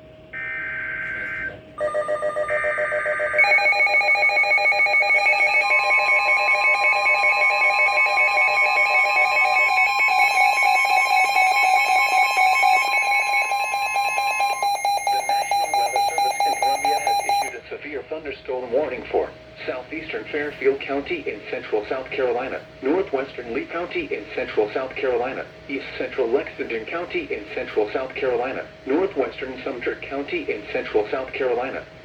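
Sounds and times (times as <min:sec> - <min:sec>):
steady attention tone: 0:00.3 - 0:17.6
rapidly pulsing alarm beeping: 0:00.4 - 0:17.6.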